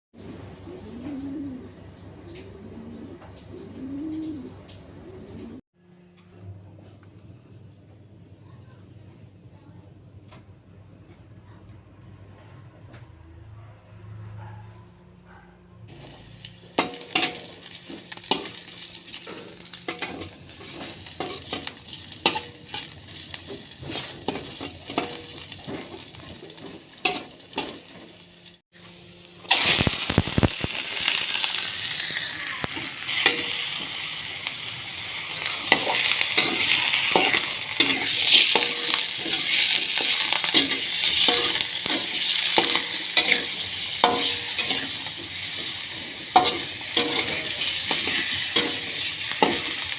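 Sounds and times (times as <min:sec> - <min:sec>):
food sizzling in oil: 0:15.9 - 0:49.9
utensil scraping a pan: 0:16.8 - 0:28.0, 0:35.4 - 0:49.9.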